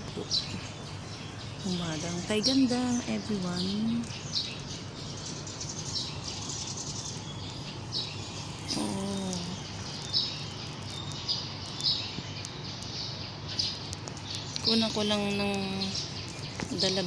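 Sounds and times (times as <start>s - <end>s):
small birds chirping: 0.0s - 17.0s
low voiced sound: 8.6s - 9.7s.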